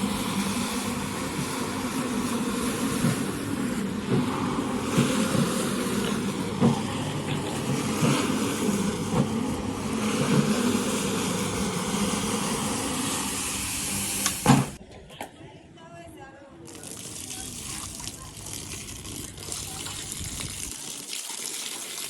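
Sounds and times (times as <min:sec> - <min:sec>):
cleaning machine motor running: 0:00.0 - 0:14.8.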